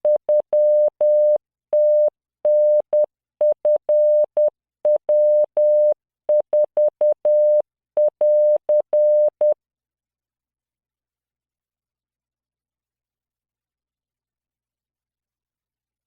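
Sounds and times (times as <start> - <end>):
morse code tone: 0.0 - 9.6.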